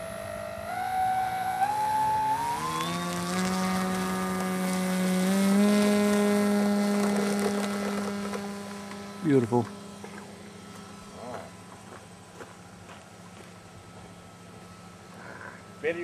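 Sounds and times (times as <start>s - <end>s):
electric motor buzzing whine: 0.0s - 16.0s.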